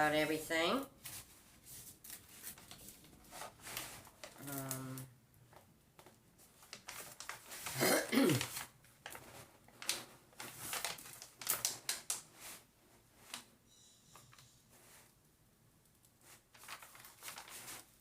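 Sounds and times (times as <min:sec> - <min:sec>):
plastic cover crinkling: 0:01.0 - 0:13.5, 0:16.2 - 0:18.0
person humming: 0:04.4 - 0:05.1.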